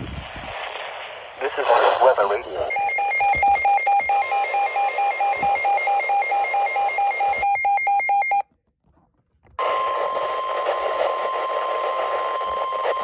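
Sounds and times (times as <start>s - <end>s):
rapid electronic beeping: 2.7s - 8.4s
steady warning alarm tone: 2.7s - 8.4s, 9.6s - 13.0s.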